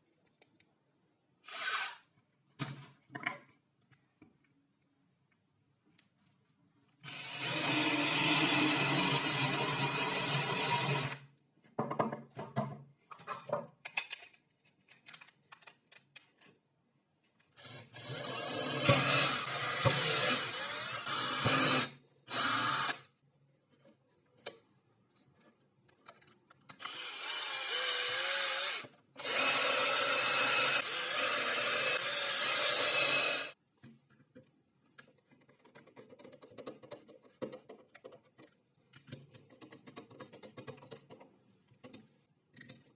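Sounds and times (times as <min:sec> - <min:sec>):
knocks and scrapes of handling: 0:11.6 - 0:17.6, 0:23.2 - 0:26.8, 0:33.7 - 0:42.9
power tool cutting wood: 0:26.8 - 0:33.6.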